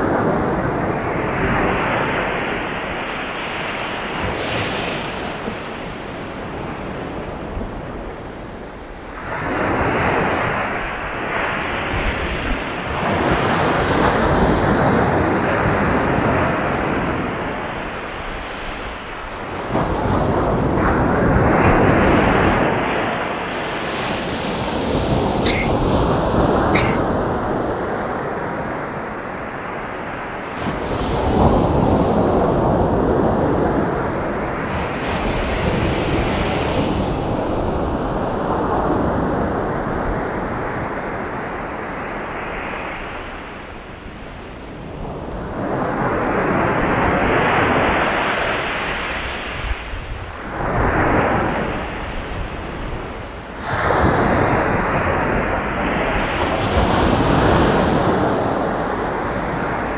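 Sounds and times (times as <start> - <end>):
sea waves breaking ashore: 10.3 - 28.6.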